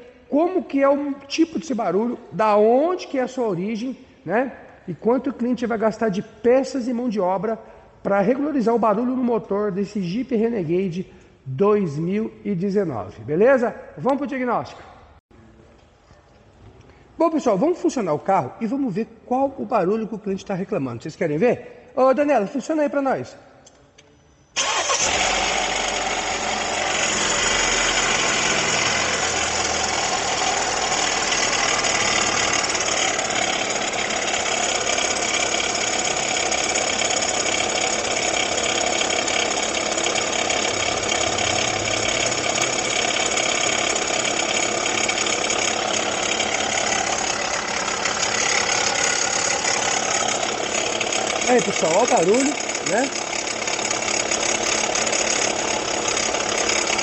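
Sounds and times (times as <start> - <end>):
engine idling with fast clattering: 24.6 - 57.0.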